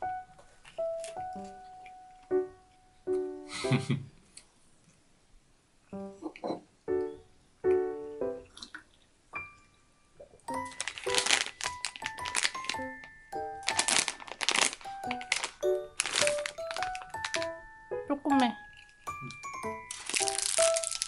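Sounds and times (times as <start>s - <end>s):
light piano background music: 0.0s - 4.1s, 5.9s - 21.0s
crinkling and crackling: 0.3s - 3.2s, 10.3s - 17.6s, 18.2s - 21.0s.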